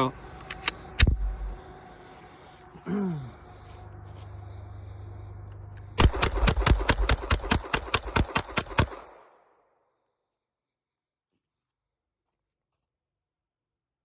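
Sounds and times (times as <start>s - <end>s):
pistol shots in rapid succession: 6.0s - 9.7s.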